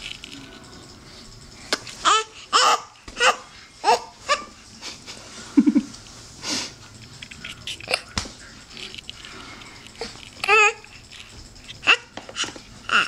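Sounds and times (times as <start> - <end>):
baby babbling: 10.4 - 10.9.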